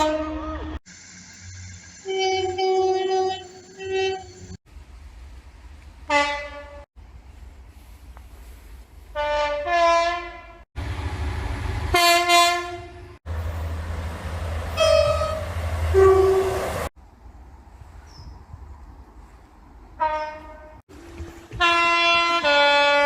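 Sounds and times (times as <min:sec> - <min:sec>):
train horn blasts: 0:00.0 - 0:00.8, 0:02.0 - 0:04.4, 0:06.1 - 0:06.9, 0:09.2 - 0:10.6, 0:11.9 - 0:13.2, 0:14.7 - 0:16.9, 0:20.0 - 0:23.0
low rumble of trains: 0:00.0 - 0:23.0.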